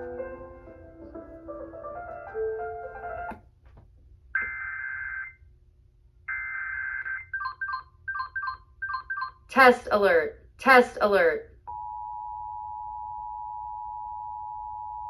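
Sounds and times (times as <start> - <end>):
piano music: 0.0 - 3.4.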